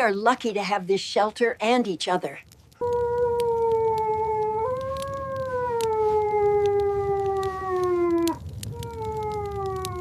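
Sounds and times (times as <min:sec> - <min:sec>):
low wind noise: 0:00.0 - 0:10.0
wolf howling: 0:02.8 - 0:10.0.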